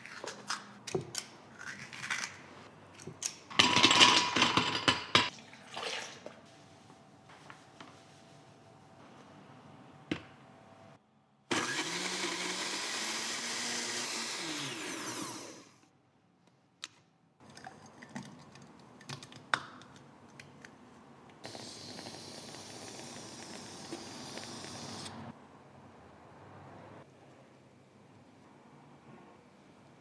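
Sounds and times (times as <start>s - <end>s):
blender motor running: 11.5s - 15.8s, 21.4s - 25.2s.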